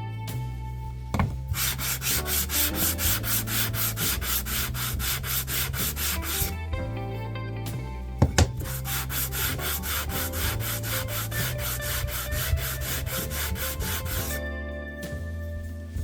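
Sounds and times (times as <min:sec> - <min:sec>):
sandpaper rubbing on wood: 0:01.5 - 0:06.6, 0:08.6 - 0:14.4.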